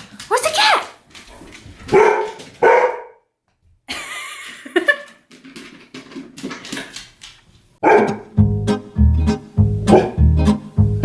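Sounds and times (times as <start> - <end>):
dog barking: 1.9 - 3.3, 7.8 - 8.3, 9.9 - 10.3.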